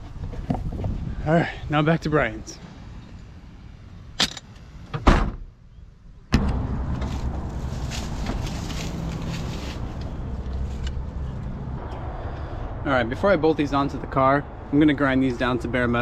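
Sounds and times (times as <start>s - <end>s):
car door slamming: 4.2s - 5.5s
low mechanical rumble: 5.7s - 15.8s.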